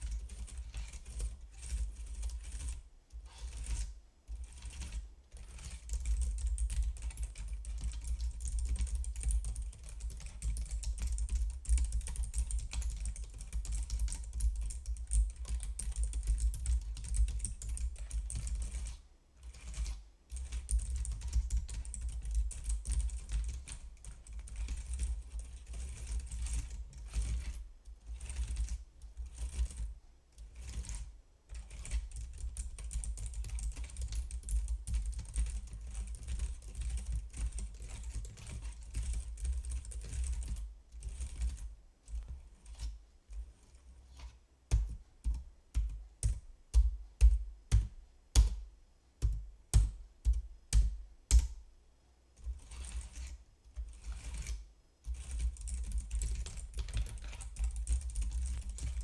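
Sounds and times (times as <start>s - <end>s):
computer keyboard typing: 4.6s - 19.0s, 19.6s - 27.5s, 31.7s - 41.7s, 55.1s - 59.0s.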